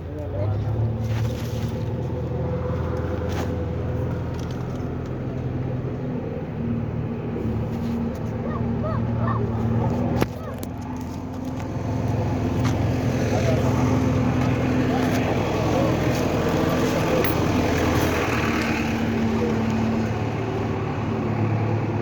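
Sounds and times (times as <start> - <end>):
puppy whimpering: 8.4 - 10.6.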